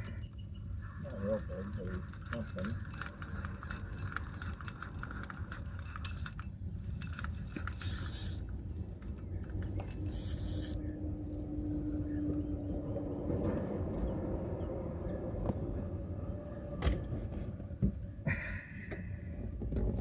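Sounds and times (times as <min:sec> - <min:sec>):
steady low hum: 0:00.0 - 0:19.6
fishing reel gears clicking: 0:00.9 - 0:11.9
low rumble: 0:09.4 - 0:18.0.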